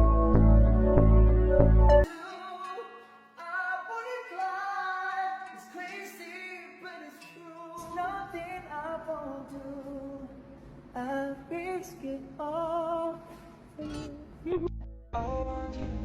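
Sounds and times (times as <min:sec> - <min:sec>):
low bass layer: 0:00.0 - 0:02.1, 0:14.5 - 0:16.0
sung melody with soft accompaniment: 0:00.0 - 0:02.1.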